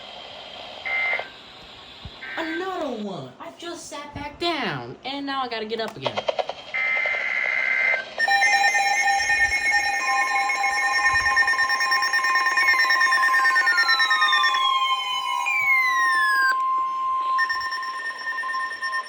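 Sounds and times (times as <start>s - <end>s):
rapid electronic beeping: 6.7s - 19.0s
steady alarm tone: 6.7s - 19.0s
siren-like tones sweeping down: 8.2s - 19.0s.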